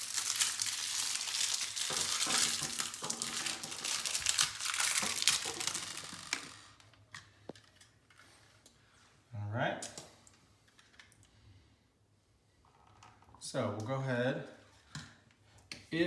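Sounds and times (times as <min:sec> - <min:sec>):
packaging crinkling: 0:00.0 - 0:06.4.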